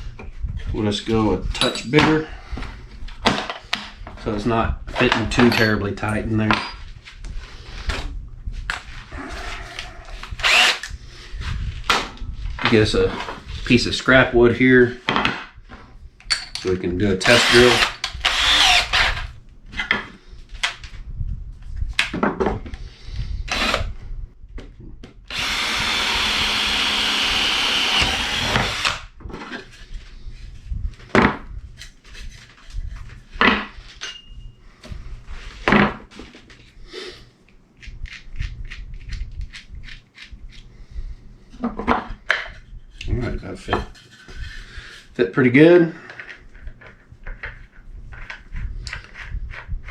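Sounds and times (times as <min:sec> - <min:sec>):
knocks and clatter of handling: 0:04.9 - 0:07.0, 0:15.0 - 0:16.8, 0:31.0 - 0:34.4, 0:41.6 - 0:42.7, 0:46.0 - 0:49.7
power drill boring wood: 0:09.7 - 0:10.9, 0:17.2 - 0:19.3, 0:23.5 - 0:23.9, 0:25.3 - 0:29.1.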